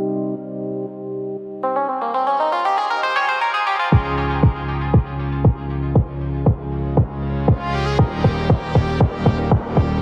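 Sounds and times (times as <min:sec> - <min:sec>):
sustained synth chords: 0:00.0 - 0:10.0
house music: 0:01.6 - 0:10.0
four-on-the-floor kick drum: 0:04.0 - 0:10.0.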